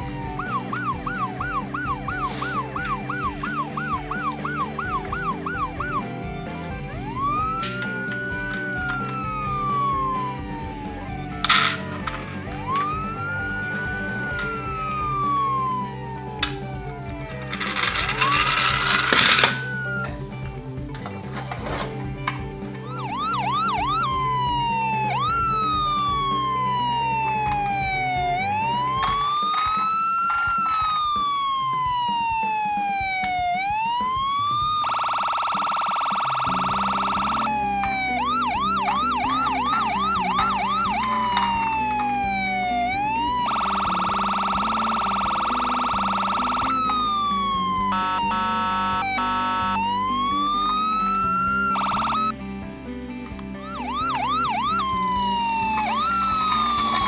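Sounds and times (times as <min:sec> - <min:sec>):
toy ambulance electronic siren: 0:00.0 - 0:20.4, 0:21.0 - 0:52.4, 0:53.3 - 0:57.0
buzzing horn tone: 0:33.0 - 0:52.3.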